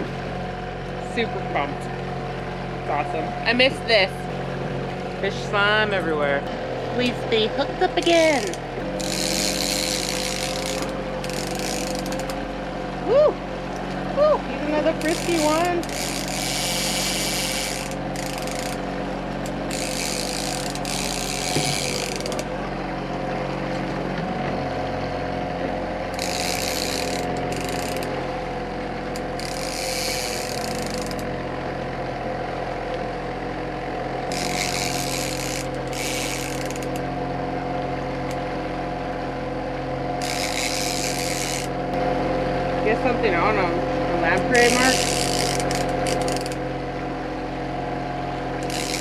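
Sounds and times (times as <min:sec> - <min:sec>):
boat engine running: 0:00.0 - 0:49.0
fishing reel ratcheting: 0:08.0 - 0:12.4, 0:15.0 - 0:18.8, 0:19.4 - 0:22.5, 0:26.1 - 0:28.1, 0:29.1 - 0:31.3, 0:34.3 - 0:37.1, 0:40.2 - 0:41.8, 0:44.6 - 0:46.6, 0:48.6 - 0:49.0.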